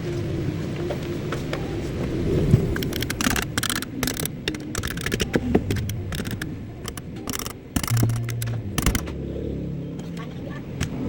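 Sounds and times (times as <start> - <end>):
sharp clicks and scrapes: 2.7 - 9.2
short low hum: 5.6 - 10.2.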